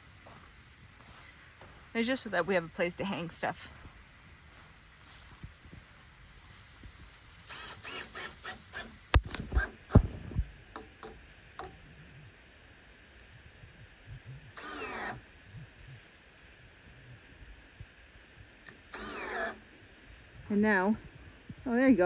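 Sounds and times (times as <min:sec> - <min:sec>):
cordless drill driving into wood: 0:07.4 - 0:10.2, 0:14.5 - 0:15.3, 0:18.7 - 0:19.6.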